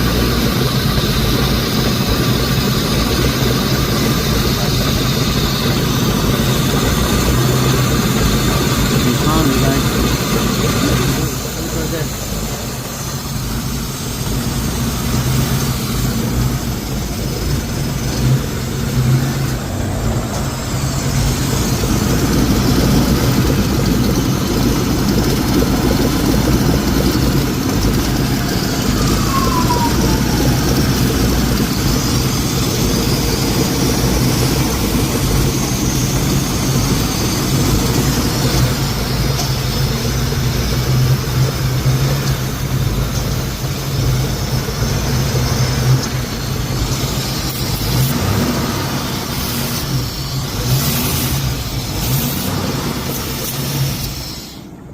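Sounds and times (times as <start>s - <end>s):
car engine idling: 0.0s - 54.9s
hiss: 0.0s - 54.9s
short falling whistle: 28.3s - 31.9s.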